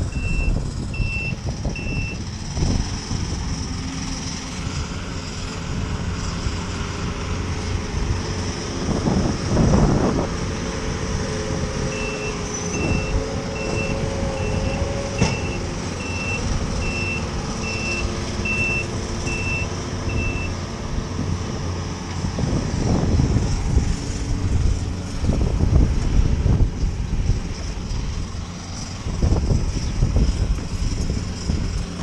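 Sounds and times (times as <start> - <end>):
vehicle reversing alarm beeping: 0.0 - 2.3, 11.9 - 20.6
low engine rumble: 0.0 - 32.0
wind or rain noise: 0.0 - 32.0.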